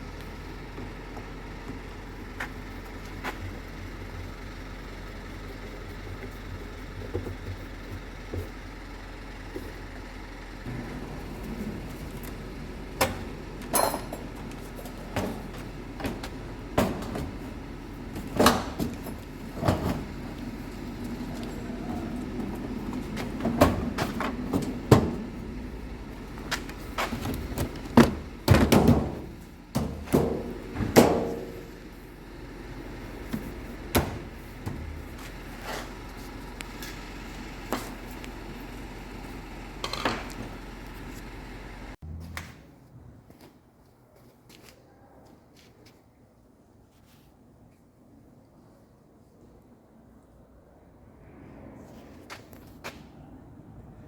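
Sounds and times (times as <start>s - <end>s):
steady low hum: 0.0s - 43.2s.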